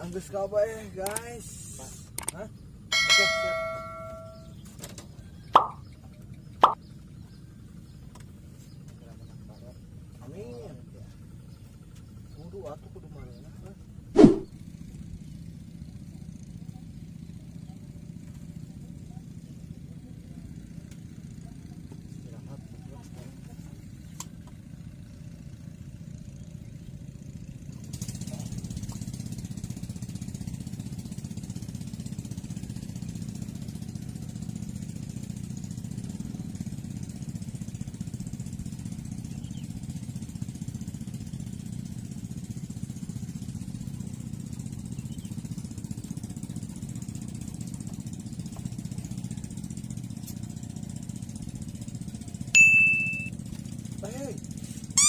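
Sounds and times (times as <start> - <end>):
small engine droning: 0.0 - 55.0
short high-pitched tone: 52.6 - 53.3.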